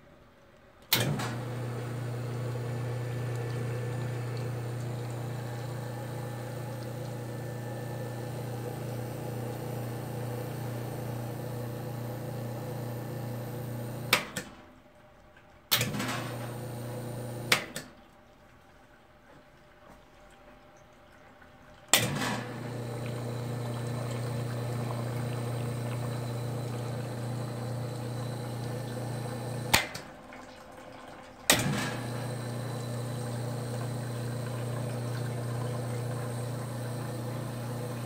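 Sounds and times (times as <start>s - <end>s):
espresso machine pump humming: 1.0s - 14.2s, 16.2s - 17.6s, 22.4s - 29.9s, 31.6s - 38.0s.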